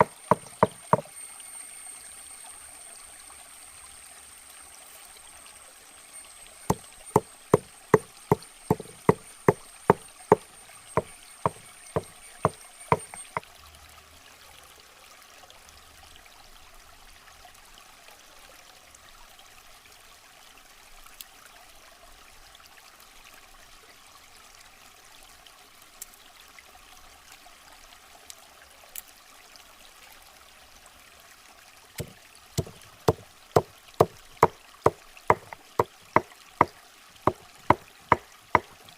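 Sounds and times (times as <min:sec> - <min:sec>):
knife chopping on wooden board: 0:00.0 - 0:01.1, 0:06.7 - 0:13.4, 0:32.0 - 0:34.6, 0:35.3 - 0:36.3, 0:37.3 - 0:38.8.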